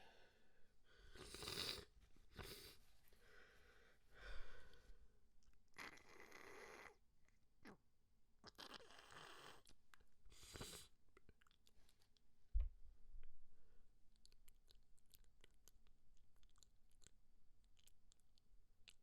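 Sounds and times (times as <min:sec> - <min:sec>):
sniffling through a congested nose: 0:01.0 - 0:02.9, 0:10.3 - 0:10.9.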